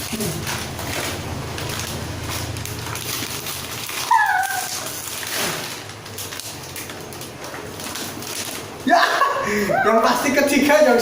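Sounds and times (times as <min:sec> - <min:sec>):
animal high cry: 0:03.9 - 0:05.0.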